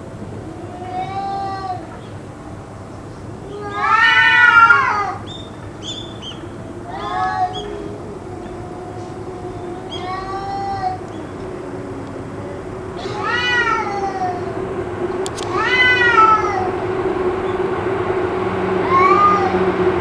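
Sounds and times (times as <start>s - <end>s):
low steady hum: 0.0s - 20.0s
cat yowling: 0.4s - 2.0s, 3.4s - 16.8s, 18.8s - 19.7s.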